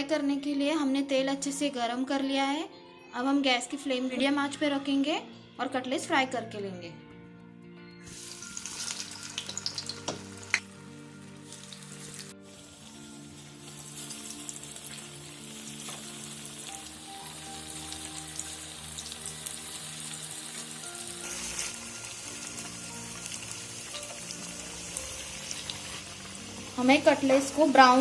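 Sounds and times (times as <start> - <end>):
chicken sizzling in hot oil: 8.1 - 28.0.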